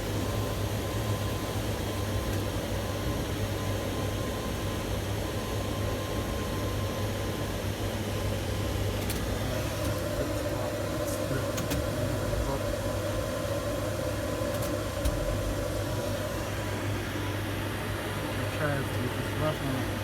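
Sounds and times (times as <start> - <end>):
crane cab mechanical hum: 0.0 - 20.0.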